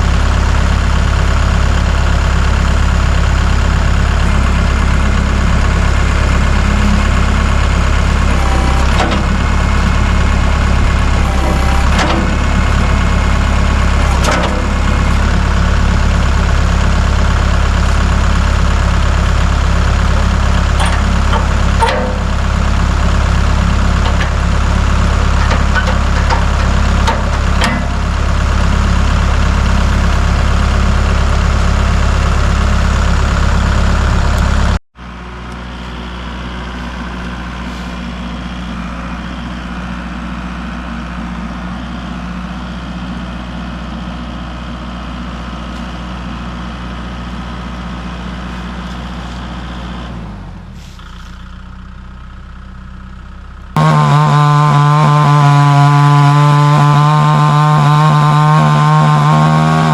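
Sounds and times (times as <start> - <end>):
large engine running: 0.0 - 59.9
sharp metallic knocks: 20.8 - 22.5, 23.9 - 28.1.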